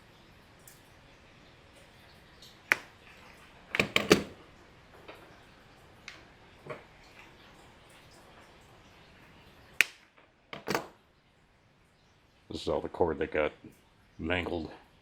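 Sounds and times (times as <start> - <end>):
sharp clicks and snaps: 9.8 - 10.9.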